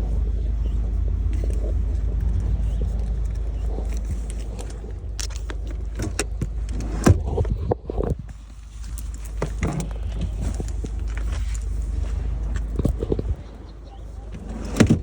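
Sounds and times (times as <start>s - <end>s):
car cabin rumble: 0.0s - 15.0s
clicks and knocks of handling: 1.3s - 11.7s.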